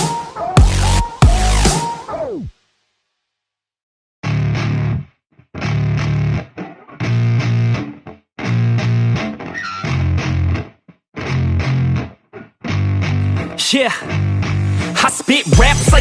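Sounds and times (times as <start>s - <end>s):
distorted electric guitar and bass: 0.6s - 1.8s, 4.2s - 15.0s, 15.6s - 16.0s.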